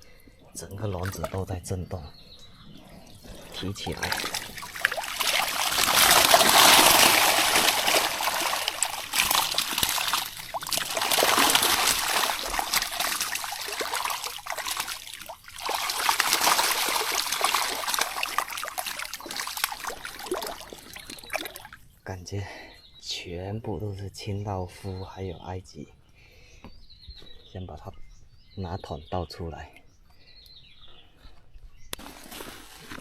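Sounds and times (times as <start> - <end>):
water streaming and splashing: 0.6 - 1.9, 3.0 - 21.9.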